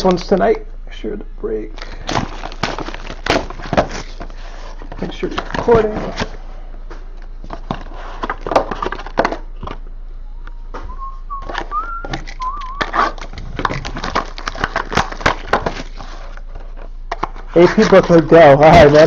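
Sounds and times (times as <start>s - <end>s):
cardboard box and wrapper crackling: 1.8s - 6.3s, 7.4s - 9.8s, 11.3s - 19.0s
person whistling: 10.8s - 13.0s.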